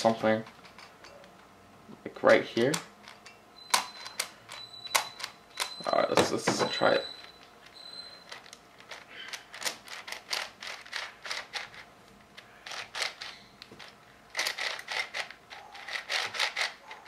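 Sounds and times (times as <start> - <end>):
plastic puzzle cube clacking: 8.3 - 11.9, 12.6 - 16.8.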